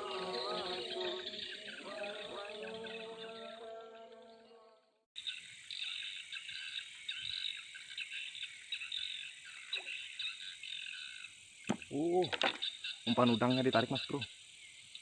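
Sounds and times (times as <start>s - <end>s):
high-pitched insect whine: 0.0s - 4.2s
frogs and insects chirping: 0.0s - 15.0s.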